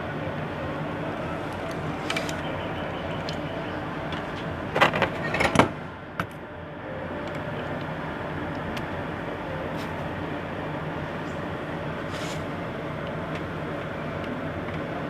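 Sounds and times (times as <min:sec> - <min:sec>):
steady background hum: 0:00.0 - 0:15.0
knocks and clatter of tools: 0:04.8 - 0:06.4.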